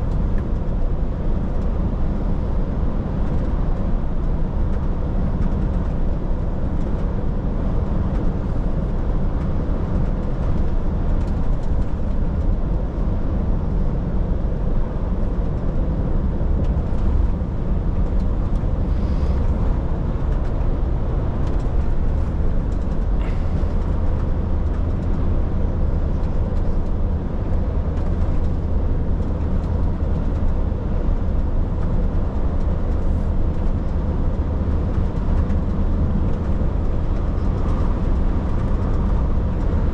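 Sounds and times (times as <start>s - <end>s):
truck engine drone: 0.0s - 39.9s
tyre rumble on road: 16.5s - 39.9s.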